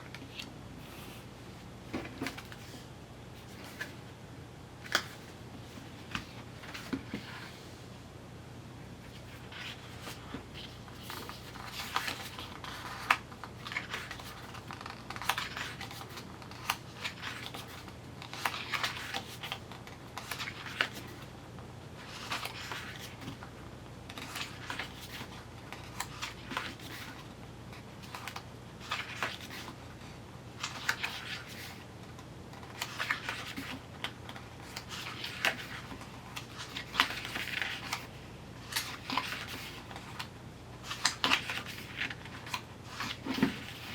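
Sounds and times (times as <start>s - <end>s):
paper and card rustling: 1.9s - 4.0s, 9.0s - 21.3s, 22.0s - 23.4s, 24.1s - 29.8s, 30.6s - 31.9s, 32.6s - 43.9s.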